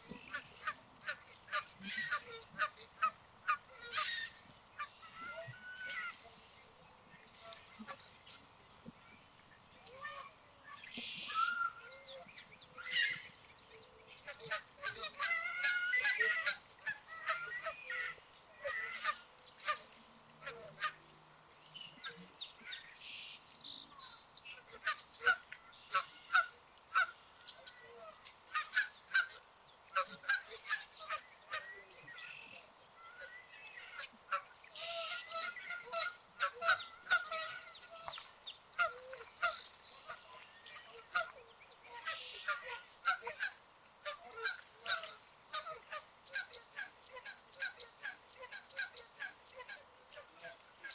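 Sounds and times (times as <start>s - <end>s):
geese honking: 14.3s - 21.0s, 30.0s - 38.1s, 38.8s - 50.9s.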